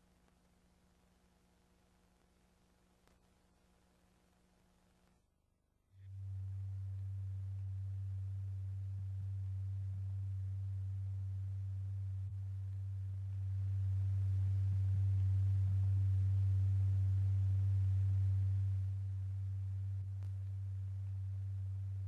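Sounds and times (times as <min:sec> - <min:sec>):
low sine tone: 0:06.0 - 0:22.0.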